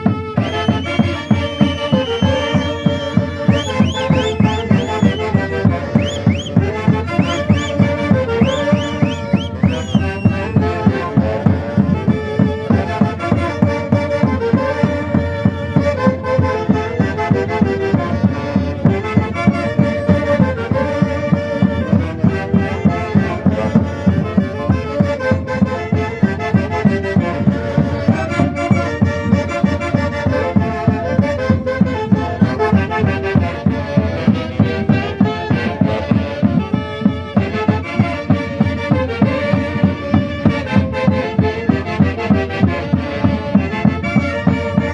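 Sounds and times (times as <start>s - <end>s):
quick drum beat: 0.4s - 11.2s
reed and brass melody: 0.4s - 11.8s, 25.7s - 44.9s.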